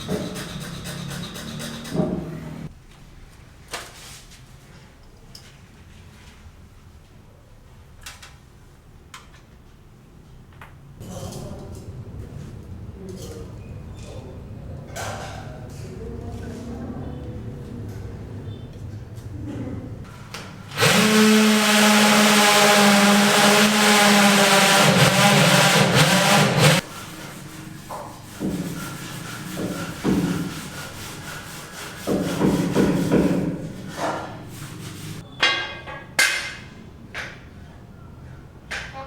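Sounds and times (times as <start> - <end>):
power tool running: 20.7 - 26.8
rubbing or scraping bursts: 20.7 - 35.2.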